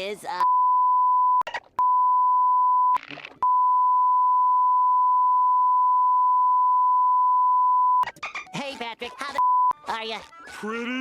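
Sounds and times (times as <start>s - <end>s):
censor bleep tone: 0.4s - 8.0s.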